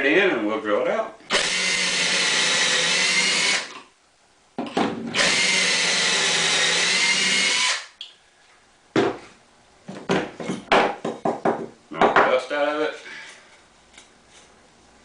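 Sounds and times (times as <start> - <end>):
electric drill whining: 1.3 - 3.8, 5.2 - 7.9.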